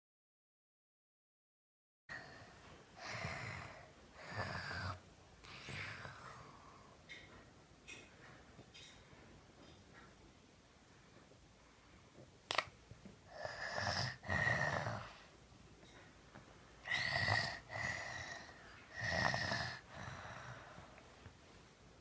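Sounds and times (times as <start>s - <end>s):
child snoring: 3.0s - 5.0s, 13.3s - 15.3s, 16.8s - 20.8s.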